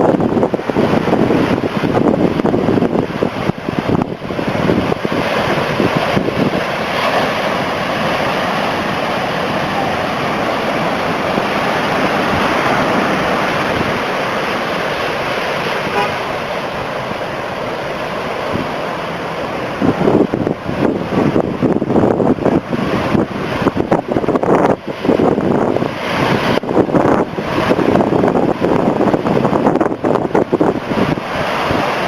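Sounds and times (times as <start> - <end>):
heavy surf breaking: 0.0 - 32.0
wind buffeting microphone: 0.0 - 32.0.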